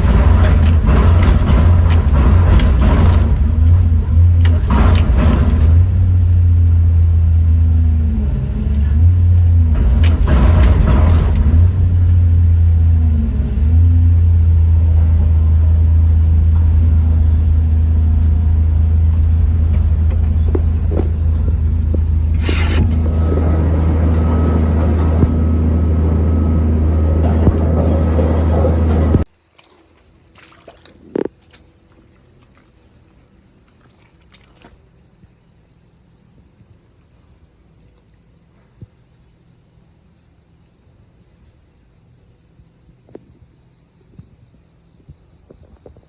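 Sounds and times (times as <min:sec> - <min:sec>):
scraping and clanking: 0:00.0 - 0:06.1, 0:08.7 - 0:12.0, 0:19.2 - 0:25.6
diesel engine drone: 0:00.0 - 0:29.3.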